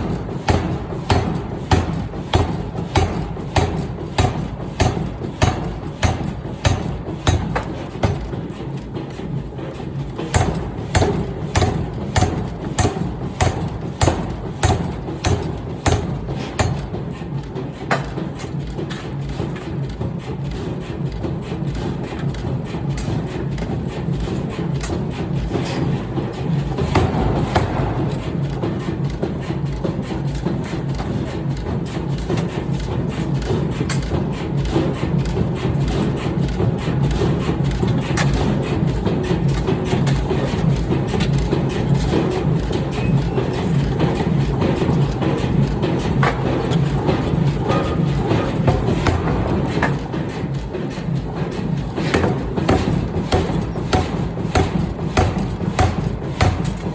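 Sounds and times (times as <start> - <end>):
forging hammer striking metal: 0.0 - 8.4, 10.2 - 17.0, 26.7 - 29.0, 46.3 - 50.2, 51.5 - 56.9
forging hammer pounding steel: 0.0 - 56.9
machinery hum: 0.0 - 56.9.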